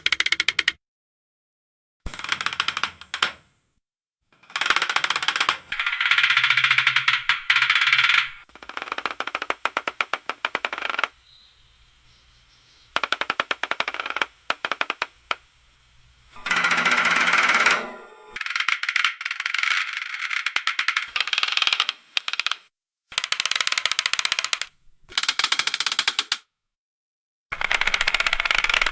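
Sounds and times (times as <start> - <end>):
roulette ball clicking and rattling: 4.7 - 11.2, 12.9 - 15.4, 18.4 - 26.4, 27.5 - 28.9.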